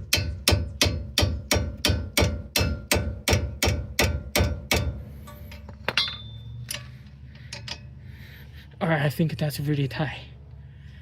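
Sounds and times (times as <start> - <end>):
hammer striking wrench: 0.0 - 6.9
metallic clink with ring: 5.3 - 6.9.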